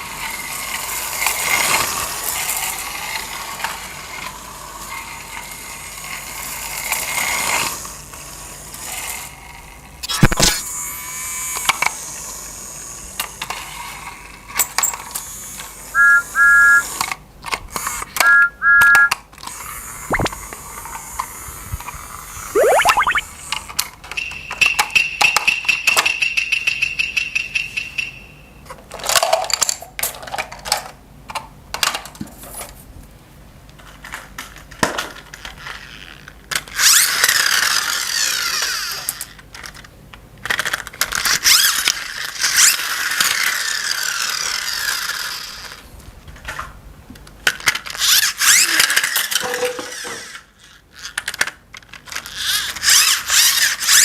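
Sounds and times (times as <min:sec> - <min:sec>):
high electronic tone: 0:22.6 - 0:23.2.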